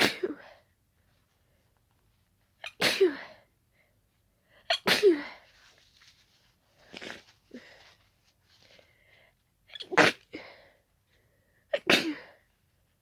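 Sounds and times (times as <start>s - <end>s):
person sneezing: 0.0s - 0.5s, 2.6s - 3.4s, 4.7s - 5.4s, 9.8s - 10.5s, 11.8s - 12.4s.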